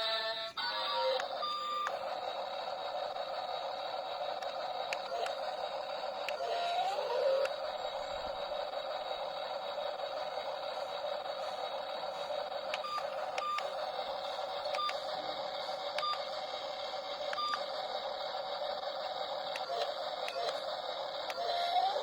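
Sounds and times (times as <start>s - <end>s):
toy gear motors whirring: 0.0s - 22.0s.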